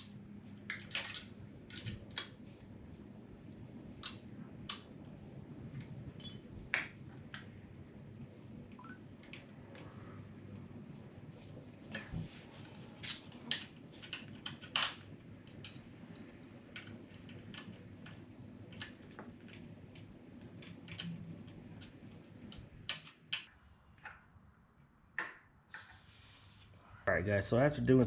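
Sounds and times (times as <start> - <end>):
metal parts and tools clicking: 0.7 - 2.3, 6.2 - 6.5.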